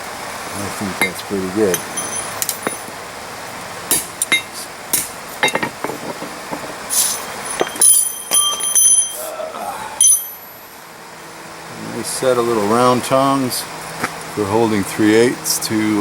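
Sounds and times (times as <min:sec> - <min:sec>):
metal tongs clinking: 0:01.0 - 0:02.9, 0:03.9 - 0:06.0, 0:06.9 - 0:09.3, 0:10.0 - 0:10.4.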